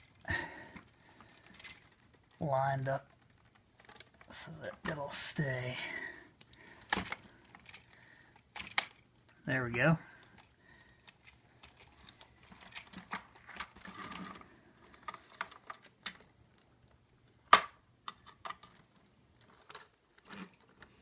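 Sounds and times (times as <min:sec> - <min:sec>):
plastic toy parts clicking: 0:00.8 - 0:02.4, 0:03.1 - 0:05.0, 0:06.4 - 0:09.1, 0:10.2 - 0:14.4, 0:15.0 - 0:20.9.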